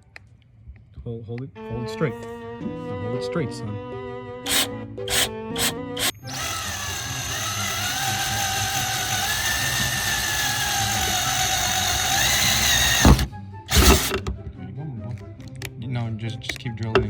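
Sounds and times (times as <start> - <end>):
power drill whining: 4.5 - 14.3.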